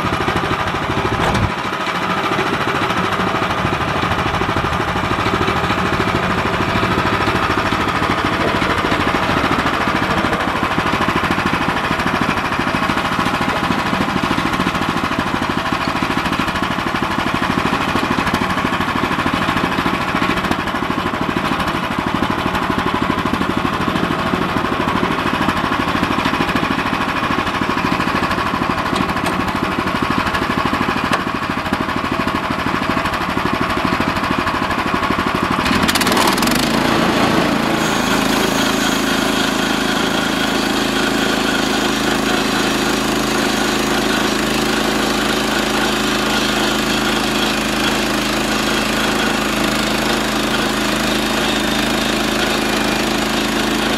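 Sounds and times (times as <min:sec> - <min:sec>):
saw blade cutting log: 0:35.5 - 0:53.9.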